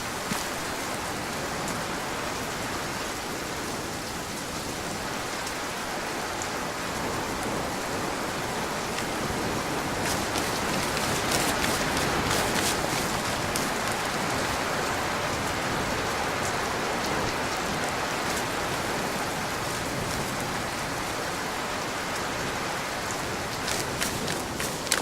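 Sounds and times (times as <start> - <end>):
steady rain hiss: 0.0 - 25.0
raindrop ticks: 8.8 - 15.5, 23.0 - 25.0.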